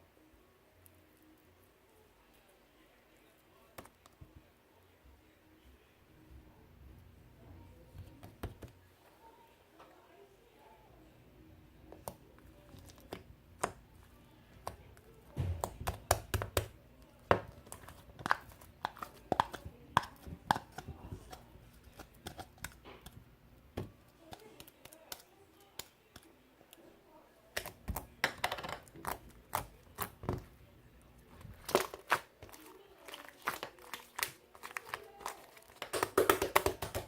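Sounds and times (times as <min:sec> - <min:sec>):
small objects clicking and tapping: 0:27.6 - 0:30.4, 0:33.5 - 0:37.0.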